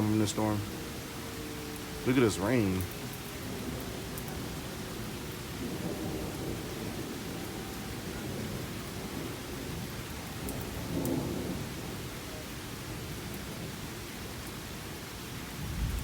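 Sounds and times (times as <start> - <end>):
rain falling: 0.0 - 16.0
low rumble of thunder: 2.8 - 14.6, 15.4 - 16.0.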